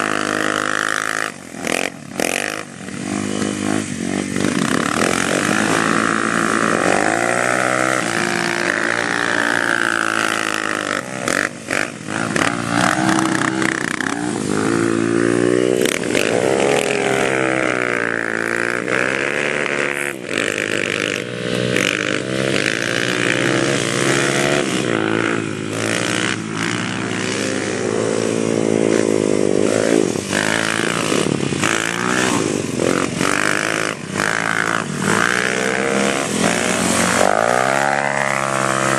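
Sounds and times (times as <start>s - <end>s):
quad bike engine revving: 0.0s - 38.9s.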